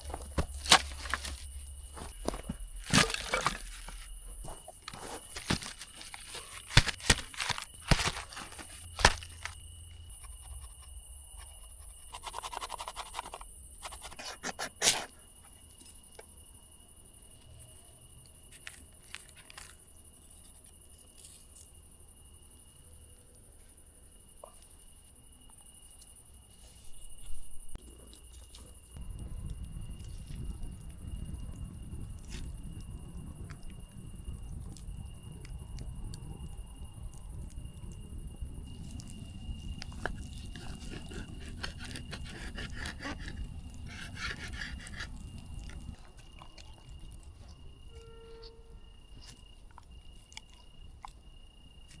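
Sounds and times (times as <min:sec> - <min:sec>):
knocks and crunches of handling: 0:00.0 - 0:11.6, 0:18.5 - 0:19.8, 0:38.7 - 0:51.2
faint steady high tone: 0:46.8 - 0:50.3.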